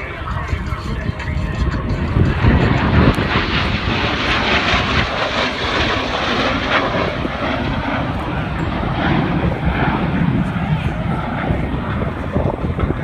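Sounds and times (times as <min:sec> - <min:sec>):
jet engine roar: 0:00.0 - 0:13.0.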